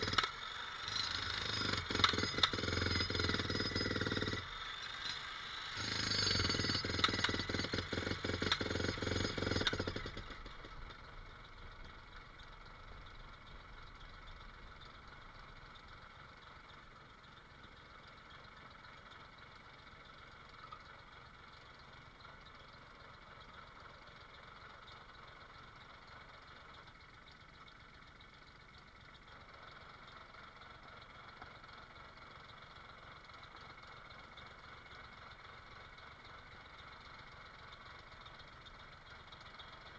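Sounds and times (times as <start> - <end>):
jackhammer hammering: 0.0 - 12.1
engine idling: 0.0 - 39.9.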